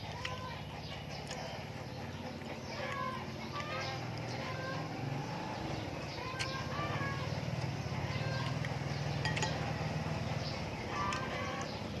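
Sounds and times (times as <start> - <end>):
utensils clinking against bowl: 8.2 - 10.0.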